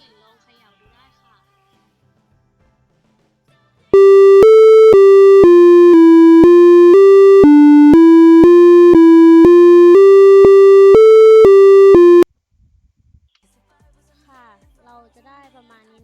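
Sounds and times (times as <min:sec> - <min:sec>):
buzzy electronic beep tones: 0:04.0 - 0:12.2.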